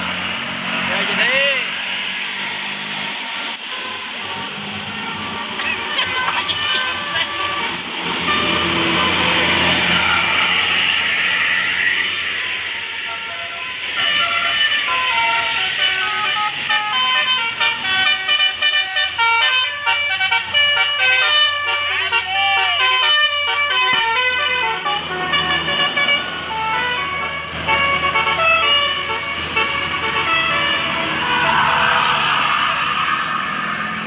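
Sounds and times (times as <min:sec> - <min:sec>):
bus engine running: 0:00.0 - 0:34.0
musical air horn playing a tune: 0:13.1 - 0:31.6.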